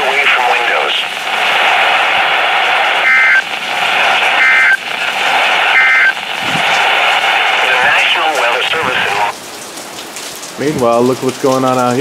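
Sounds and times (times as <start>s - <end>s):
radio static hiss: 0.0s - 9.4s
warbling digital data tones: 3.0s - 3.5s, 4.4s - 4.9s, 5.7s - 6.3s.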